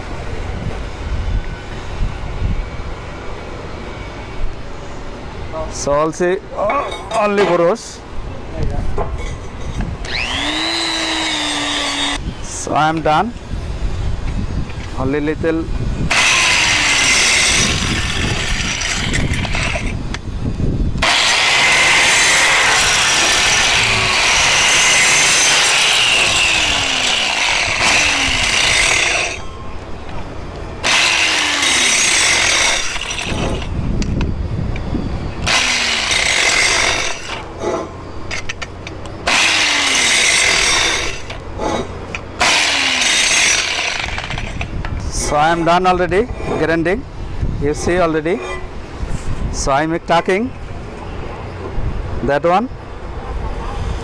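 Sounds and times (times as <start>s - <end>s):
angle grinder grinding steel: 10.1s - 12.2s, 16.1s - 20.0s, 21.0s - 29.7s, 30.7s - 33.8s, 35.4s - 38.5s, 39.2s - 46.9s.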